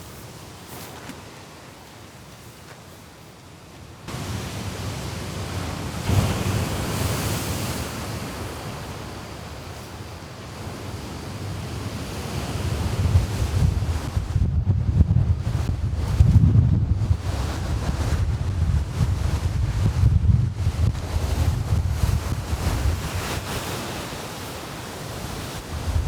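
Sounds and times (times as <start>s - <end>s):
sea waves washing onto shore: 0.0s - 14.5s, 15.3s - 26.0s
wind buffeting microphone: 12.0s - 24.2s, 25.1s - 26.0s.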